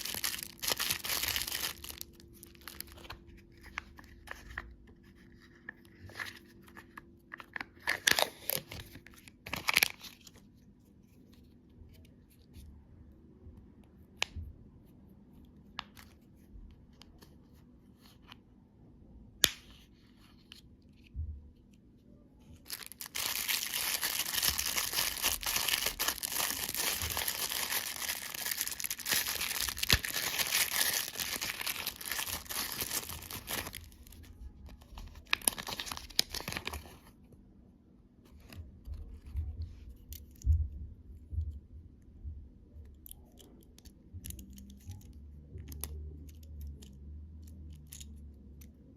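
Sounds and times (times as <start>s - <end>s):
candy wrappers crinkling: 0.0s - 4.7s, 7.4s - 10.4s, 22.6s - 37.1s.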